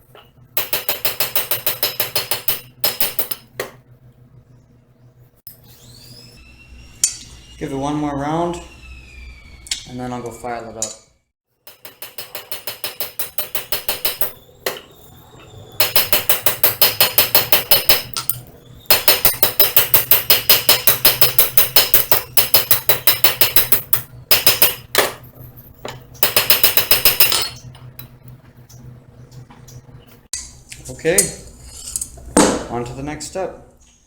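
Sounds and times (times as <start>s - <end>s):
hammer striking steel on anvil: 0.6s - 3.4s, 7.0s - 7.3s, 11.7s - 14.8s, 15.8s - 25.2s, 26.2s - 27.6s.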